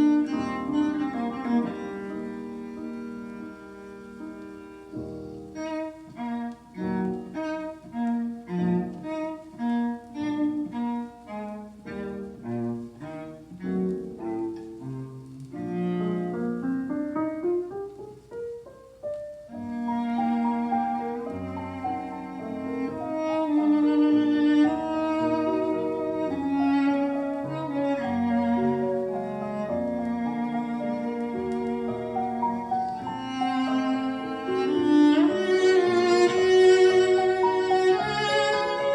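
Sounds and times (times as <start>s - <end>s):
classical music through speakers: 0.0s - 38.9s.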